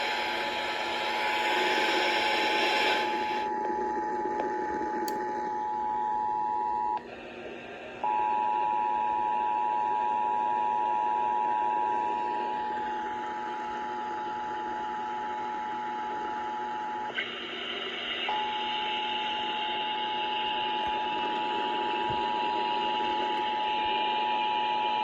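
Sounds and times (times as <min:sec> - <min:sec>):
radio hiss: 0:00.0 - 0:03.5.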